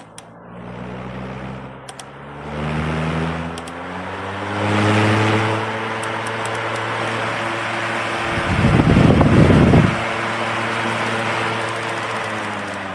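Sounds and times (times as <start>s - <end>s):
fan motor hum speeding up: 0.0s - 12.9s
rush of air: 8.0s - 10.1s.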